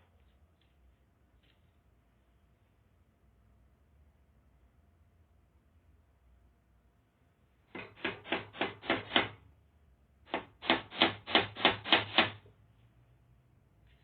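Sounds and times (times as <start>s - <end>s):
hammer driving nails: 7.7s - 9.4s, 10.3s - 12.5s.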